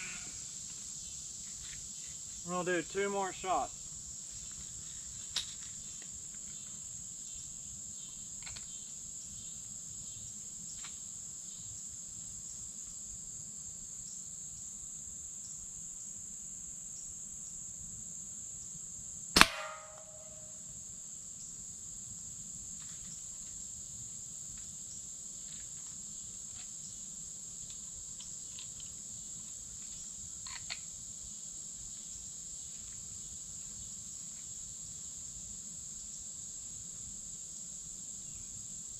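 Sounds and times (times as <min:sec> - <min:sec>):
insects trilling: 0:00.0 - 0:38.9
slingshot crack with ringing: 0:19.4 - 0:20.5.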